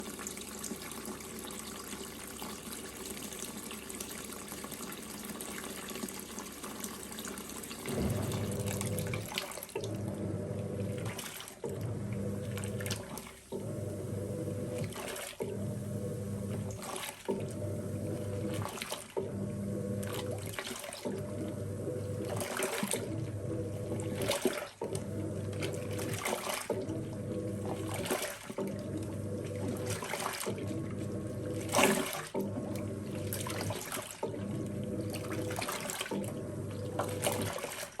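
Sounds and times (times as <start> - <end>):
washing machine motor hum: 0.0 - 38.0
water pouring into washing machine: 0.0 - 38.0
water sloshing: 7.8 - 10.2, 10.8 - 38.0.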